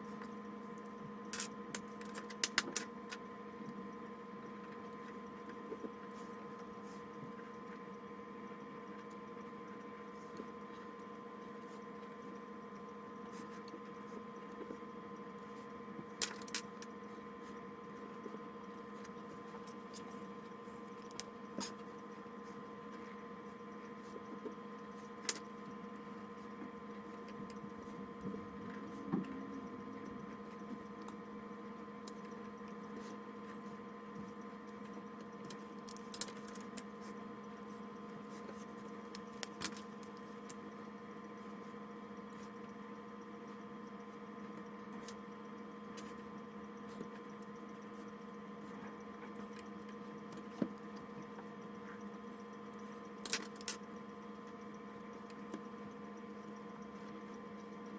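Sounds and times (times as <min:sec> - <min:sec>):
steady electrical hum: 0:00.0 - 0:57.9.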